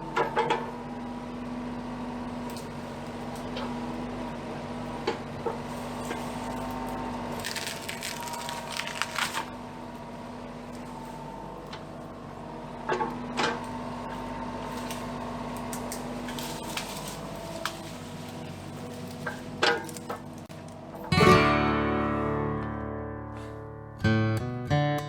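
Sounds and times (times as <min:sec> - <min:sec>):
acoustic guitar music: 0:21.0 - 0:25.0
strummed guitar chord: 0:21.0 - 0:25.0.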